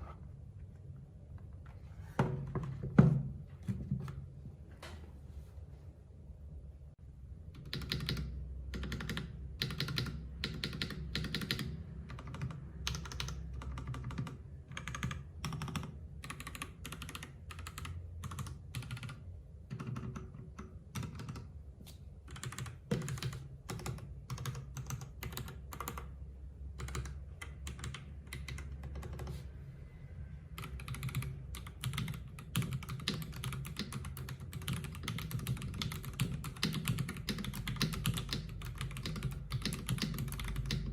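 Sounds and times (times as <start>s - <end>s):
mechanical keyboard typing: 7.6s - 21.5s, 22.2s - 29.4s, 30.6s - 40.9s.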